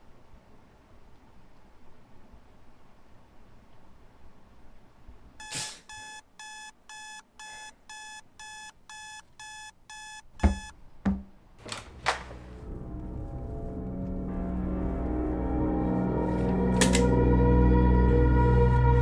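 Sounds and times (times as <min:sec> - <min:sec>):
electronic alarm beeping: 0:05.4 - 0:10.8
heavy thumps: 0:10.4 - 0:11.5.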